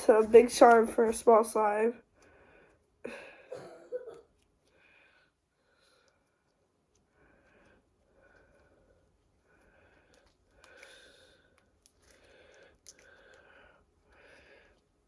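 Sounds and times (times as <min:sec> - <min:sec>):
faint breathing: 0:02.1 - 0:03.5, 0:04.6 - 0:14.9.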